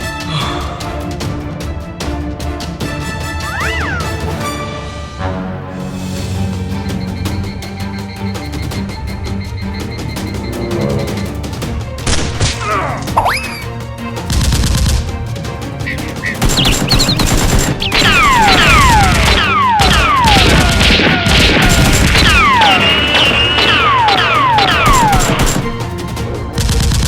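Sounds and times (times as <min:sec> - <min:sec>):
music: 0:00.0 - 0:27.0
rapid gunshots: 0:14.2 - 0:27.0
falling whistles: 0:22.2 - 0:25.3.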